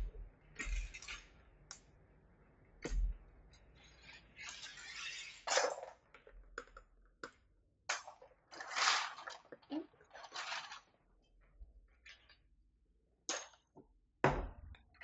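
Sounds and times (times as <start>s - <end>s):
plastic parts clicking and clinking: 0.6s - 1.9s.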